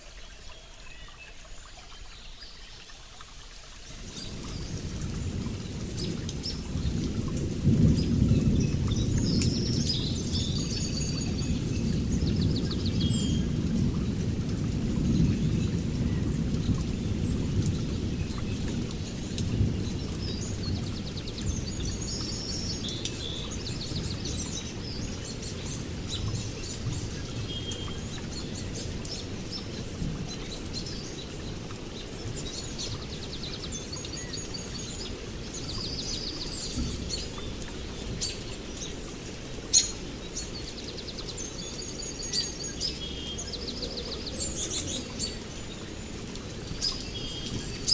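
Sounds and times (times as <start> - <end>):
small birds chirping and trilling: 3.7 - 47.9.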